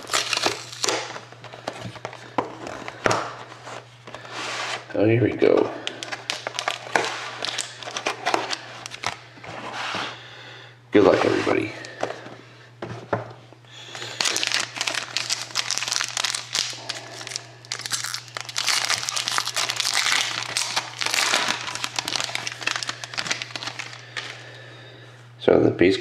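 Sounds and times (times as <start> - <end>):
plastic wrapper crinkling and tearing: 0.0 - 1.3, 5.8 - 9.2, 13.8 - 24.4.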